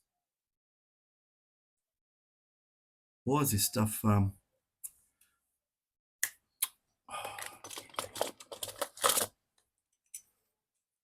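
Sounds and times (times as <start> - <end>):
tool clicking and scraping plastic: 7.3 - 9.3.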